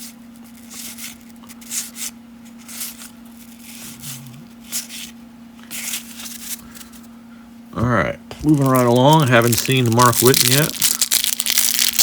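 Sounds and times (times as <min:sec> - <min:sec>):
cards swishing against each other: 0:00.0 - 0:07.1
faint electrical hum: 0:00.0 - 0:12.0.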